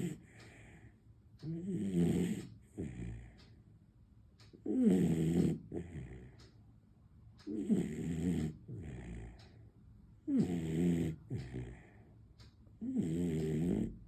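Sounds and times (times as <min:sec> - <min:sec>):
puppy snoring: 0:00.0 - 0:00.2, 0:01.4 - 0:03.4, 0:04.6 - 0:06.4, 0:07.5 - 0:09.5, 0:10.2 - 0:12.0, 0:12.8 - 0:14.0.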